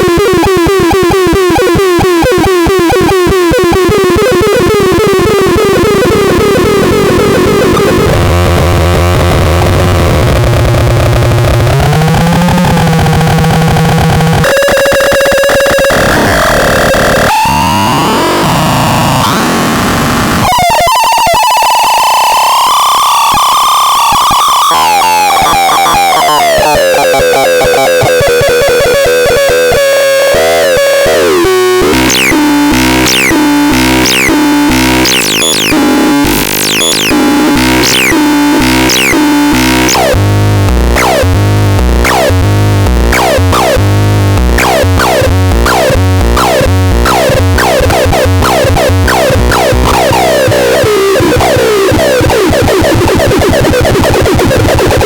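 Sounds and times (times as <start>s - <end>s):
harsh buzzy synthesizer tones: 0.0s - 55.0s
pulsing low bass beat: 31.8s - 53.7s.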